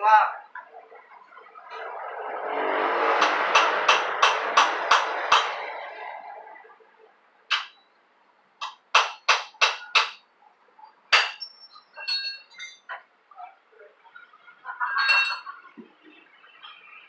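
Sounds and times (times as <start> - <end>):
metal-on-metal strikes: 3.2 - 5.8, 7.5 - 7.8, 8.6 - 10.2, 11.1 - 11.4.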